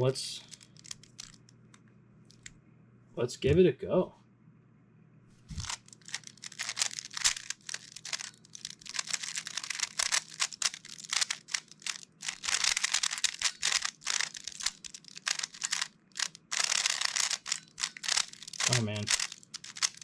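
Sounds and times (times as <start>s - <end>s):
speed cube clicking: 0.4s - 1.6s, 5.5s - 20.0s.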